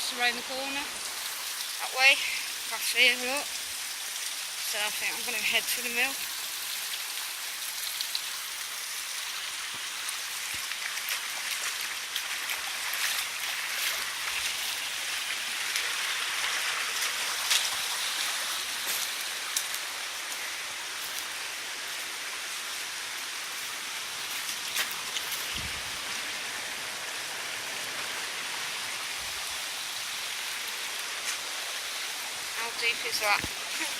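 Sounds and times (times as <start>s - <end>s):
stream water rushing: 0.0s - 33.9s.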